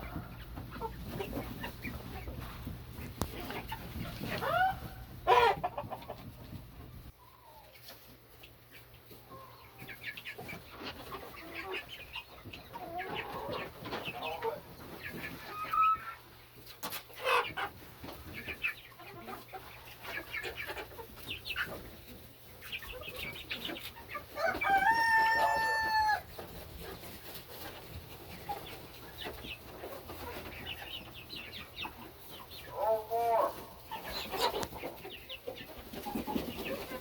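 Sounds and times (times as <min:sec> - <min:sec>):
chickens clucking: 0:00.0 - 0:37.0
rooster crowing: 0:24.4 - 0:26.3.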